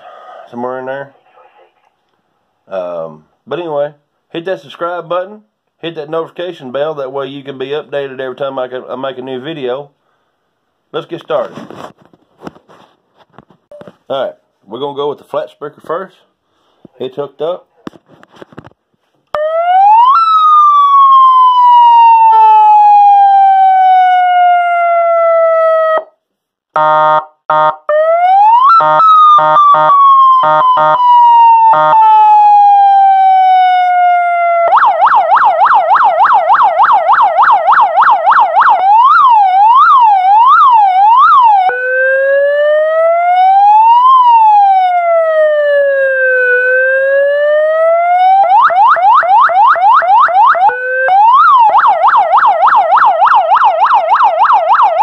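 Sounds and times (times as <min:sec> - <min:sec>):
electronic police siren: 0:19.3 - 0:26.2, 0:26.8 - 0:55.0
short siren horn blasts: 0:26.8 - 0:27.8.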